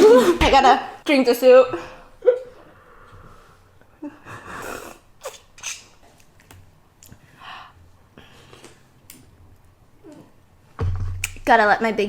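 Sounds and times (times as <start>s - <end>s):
person slurping broth: 4.4s - 5.9s.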